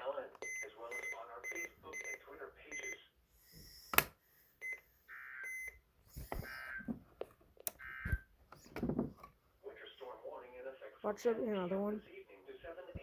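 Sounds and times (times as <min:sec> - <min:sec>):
sharp click: 0:03.9 - 0:04.2.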